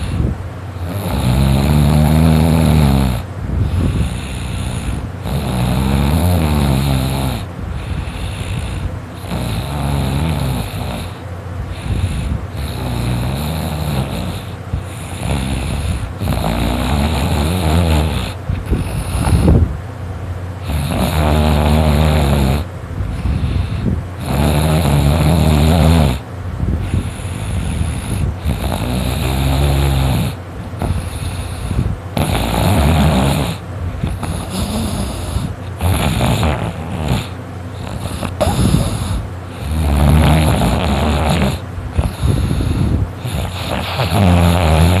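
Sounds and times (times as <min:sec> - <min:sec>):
person snoring loudly: 0:00.0 - 0:19.7, 0:20.6 - 0:26.2, 0:26.8 - 0:45.0.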